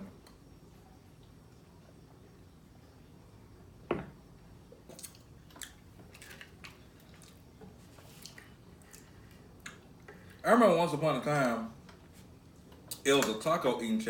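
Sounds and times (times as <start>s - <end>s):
person chewing food: 4.8s - 10.4s.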